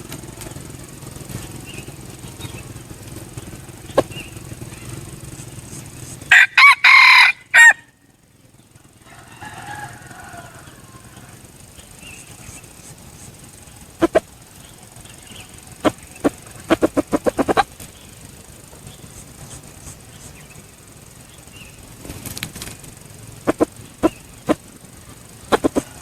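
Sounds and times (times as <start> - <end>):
rooster flapping its wings: 0.0 - 7.8, 15.3 - 20.7, 21.8 - 26.0.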